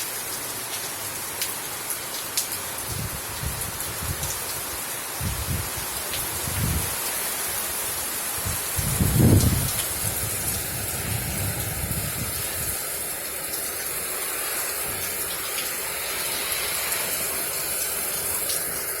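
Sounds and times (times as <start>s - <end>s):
steady rain: 0.0s - 19.0s
wind buffeting microphone: 2.9s - 4.6s, 5.2s - 7.0s, 8.4s - 12.8s.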